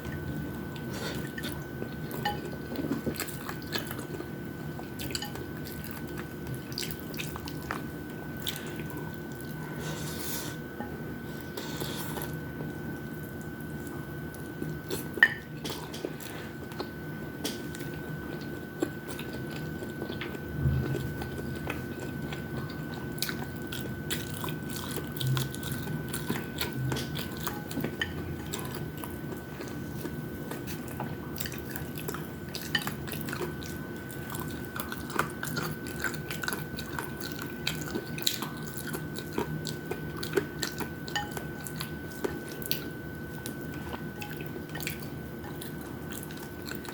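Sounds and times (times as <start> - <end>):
chewing and biting food: 0.0 - 9.8, 11.4 - 46.9.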